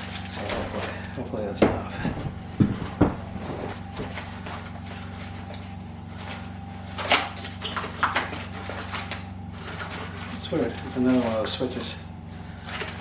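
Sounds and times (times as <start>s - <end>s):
low hum: 0.0s - 13.0s
packaging rustles: 0.0s - 13.0s
short knocks: 1.6s - 4.1s.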